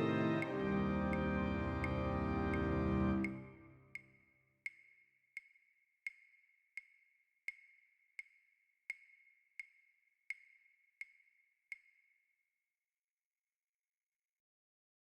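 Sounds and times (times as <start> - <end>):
sharp ticks with ringing tone: 3.2 - 12.3.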